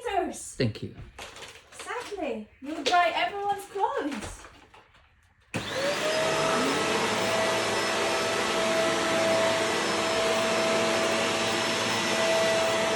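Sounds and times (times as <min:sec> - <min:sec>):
vacuum cleaner running: 0:05.6 - 0:12.9.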